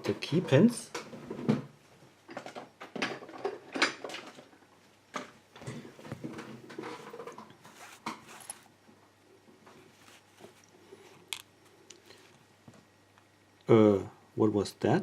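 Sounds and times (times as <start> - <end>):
small handling rattles: 2.3 - 8.8.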